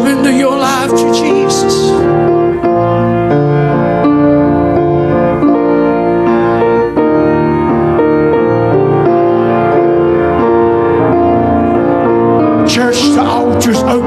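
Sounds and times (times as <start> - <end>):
keyboard playing slow chords: 0.0 - 14.0.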